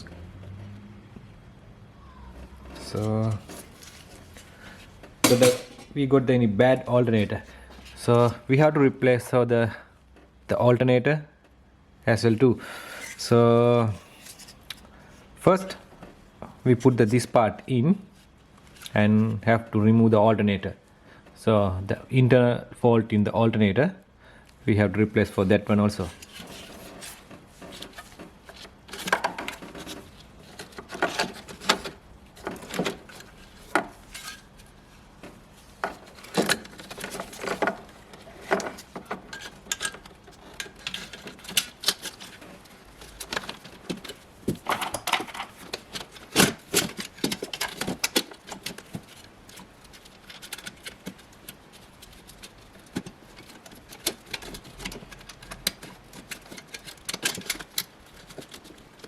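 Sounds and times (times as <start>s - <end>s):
tools and metal parts clinking: 5.2s - 5.9s, 36.0s - 42.4s.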